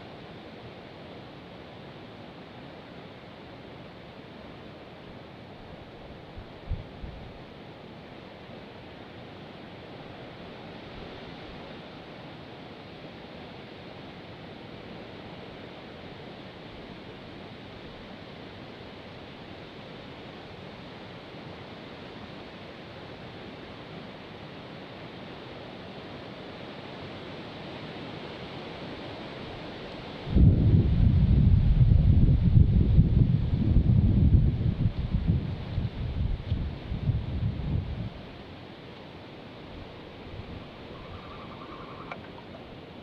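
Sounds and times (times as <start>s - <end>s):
wind gust hitting microphone: 30.3s - 38.2s.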